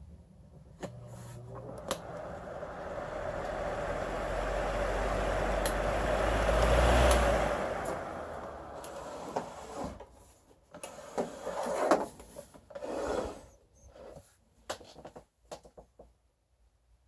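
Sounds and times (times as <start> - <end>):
table fan spinning down: 0.7 - 10.1
rubbing and scraping: 8.7 - 14.4.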